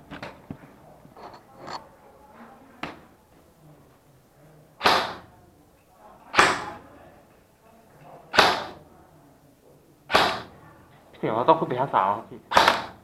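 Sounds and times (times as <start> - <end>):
airsoft gun shots: 4.8 - 5.3, 6.4 - 6.8, 8.3 - 8.8, 10.1 - 10.6, 12.5 - 13.0.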